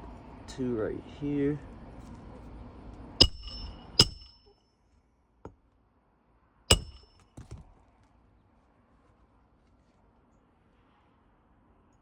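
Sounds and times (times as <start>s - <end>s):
hammer striking roofing nails: 3.2s - 4.4s, 6.7s - 7.6s.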